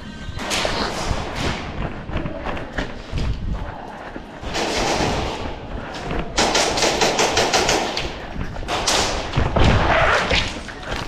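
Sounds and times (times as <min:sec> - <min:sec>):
airsoft gun firing rapid shots: 0:06.4 - 0:09.3.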